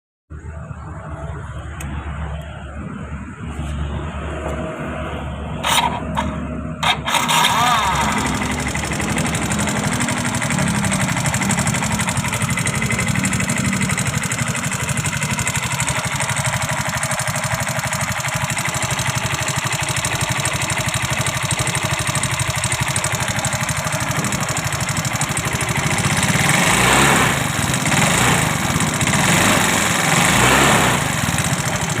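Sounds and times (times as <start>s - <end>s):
scooter engine idling roughly: 5.6s - 32.0s
scooter throttle blips: 5.6s - 32.0s.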